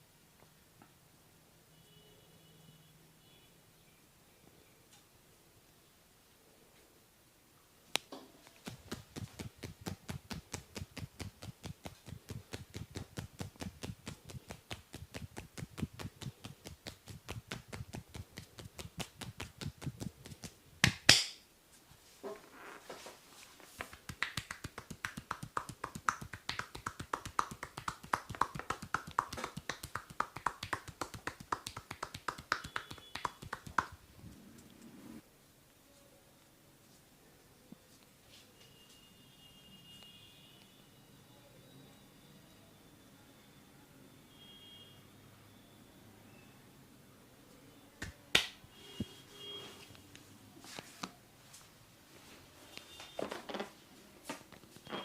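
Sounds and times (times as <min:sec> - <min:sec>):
slapping strokes: 0:08.0 - 0:21.4, 0:23.7 - 0:34.7
percussive massage thuds: 0:08.5 - 0:21.4, 0:23.8 - 0:34.0.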